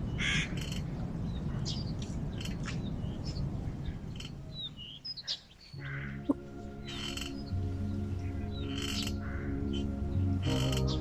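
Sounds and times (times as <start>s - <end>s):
small birds chirping: 0.0s - 11.0s
low background rumble: 5.8s - 11.0s.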